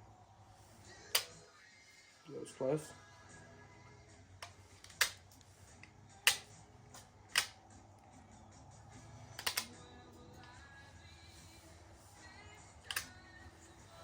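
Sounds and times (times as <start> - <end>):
quiet background music: 0.0 - 14.0
sharp hand tool clicks: 7.4 - 7.6, 9.4 - 9.7, 12.9 - 13.1.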